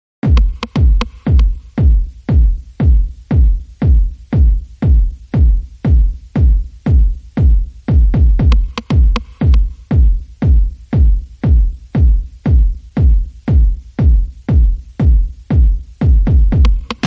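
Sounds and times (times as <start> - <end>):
electronic dance music: 0.2 - 17.0
heavy deep kick drum: 0.2 - 17.0.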